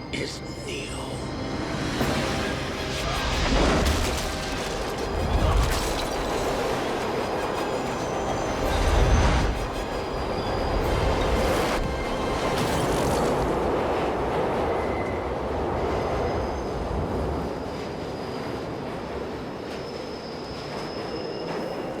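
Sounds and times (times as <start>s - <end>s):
subway train rumbling: 0.0s - 22.0s
high wheel squeal: 19.7s - 22.0s.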